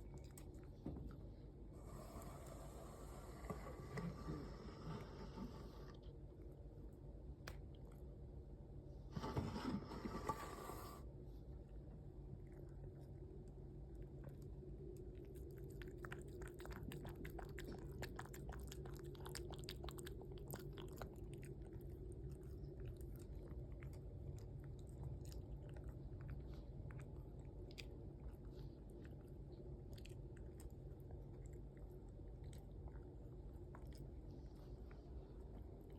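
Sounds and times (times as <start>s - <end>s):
faint low hum: 0.0s - 35.9s.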